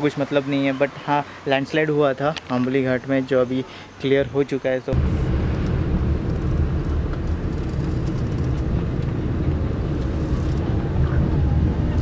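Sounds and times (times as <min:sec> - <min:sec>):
car driving rumble: 0:05.0 - 0:12.0.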